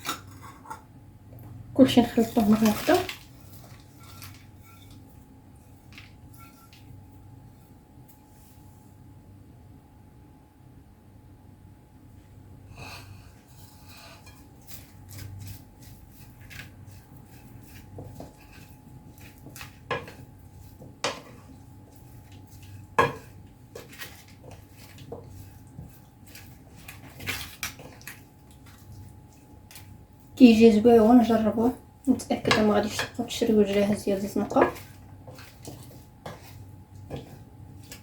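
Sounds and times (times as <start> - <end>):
spoon clinking and scraping bowl: 6.0 - 6.9, 13.5 - 29.9, 32.4 - 38.0.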